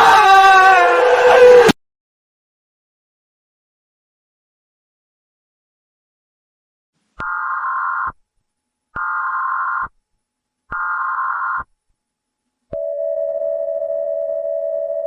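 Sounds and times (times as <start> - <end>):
faint static: 7.0 - 14.4.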